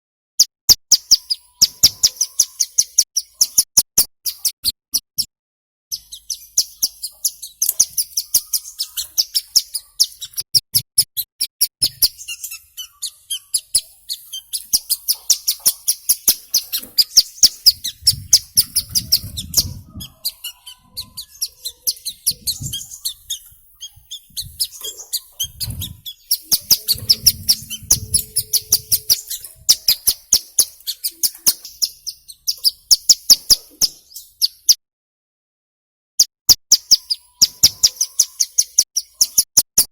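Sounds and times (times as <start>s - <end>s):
bird singing rapid high chirps: 0.9s - 5.3s, 5.9s - 34.8s, 36.5s - 39.9s.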